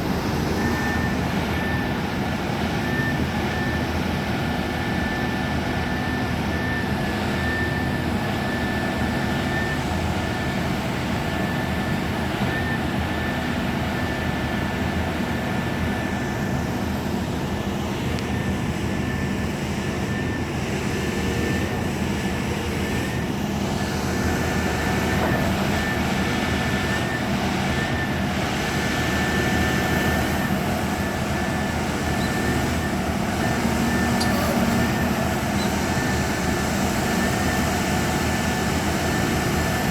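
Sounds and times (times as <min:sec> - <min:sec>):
excavator diesel engine drone: 0:00.0 - 0:39.9
thin steady whine: 0:15.5 - 0:39.9.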